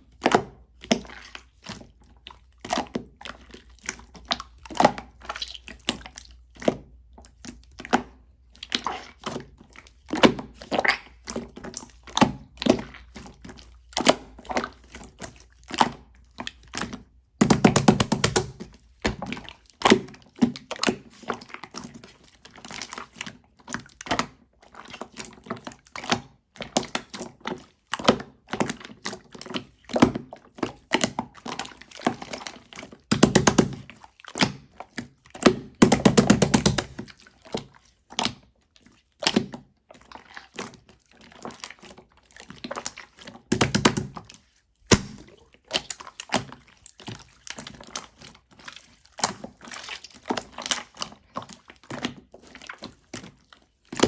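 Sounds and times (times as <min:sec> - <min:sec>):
slime squished by hand: 0:10.2 - 0:20.0, 0:33.1 - 0:34.6, 0:35.4 - 0:37.2, 0:42.5 - 0:48.2
rapid popping: 0:17.4 - 0:18.6, 0:35.8 - 0:37.0.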